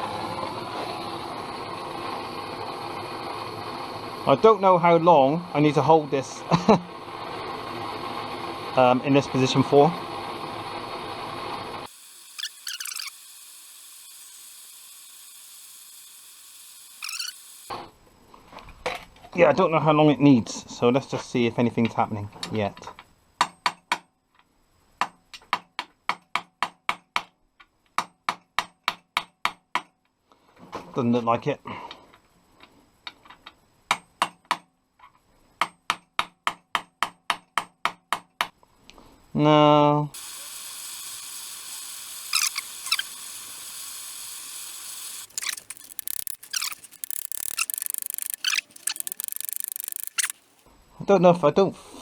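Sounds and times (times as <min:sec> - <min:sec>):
gas blowlamp hissing: 0:11.9 - 0:17.7, 0:40.2 - 0:50.6.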